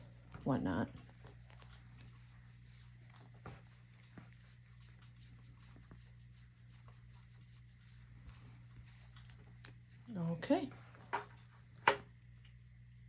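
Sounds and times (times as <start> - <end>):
low steady hum: 0.0 - 13.0
hands rubbing dog fur: 1.0 - 10.1.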